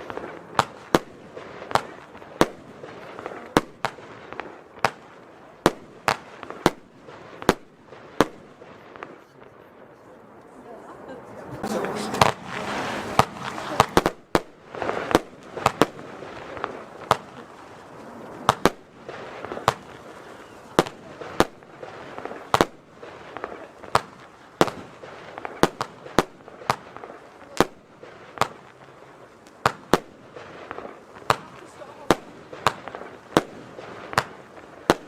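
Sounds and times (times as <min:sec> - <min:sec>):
firework bangs: 0:00.0 - 0:09.7, 0:11.6 - 0:35.0
firework hiss: 0:11.6 - 0:35.0.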